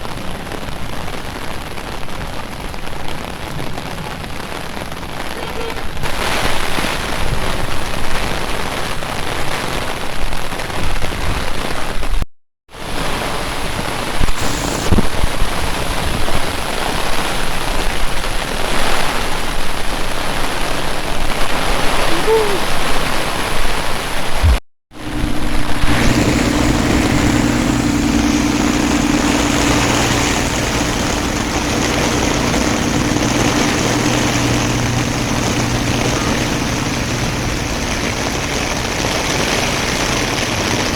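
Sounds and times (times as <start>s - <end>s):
rain falling and splashing: 0.0s - 12.2s, 12.8s - 40.9s
engine hum: 24.4s - 40.8s.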